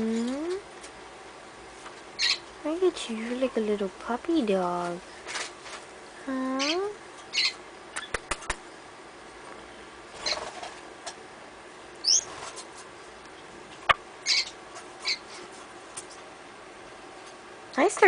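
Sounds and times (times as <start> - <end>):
birds squeaking and chirping: 2.1 - 2.5, 6.6 - 8.6, 10.1 - 10.8, 12.0 - 12.6, 14.2 - 15.5
sharp clicks: 8.0 - 8.6.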